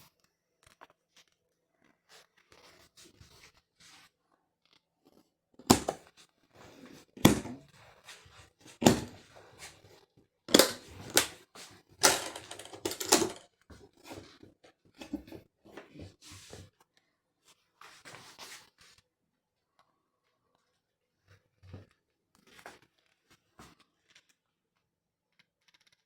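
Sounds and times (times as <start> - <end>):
hard objects knocking together: 5.6 - 6.0, 7.2 - 7.6, 8.8 - 9.2, 10.5 - 11.4, 12.0 - 13.4
soft handling noise: 5.6 - 19.0.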